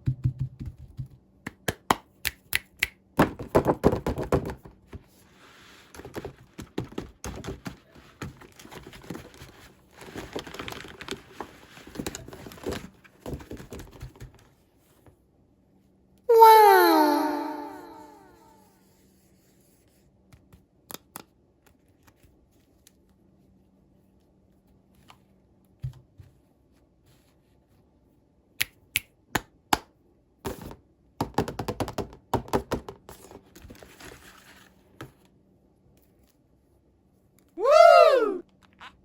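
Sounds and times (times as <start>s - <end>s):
packaging rustling: 8.2s - 14.2s.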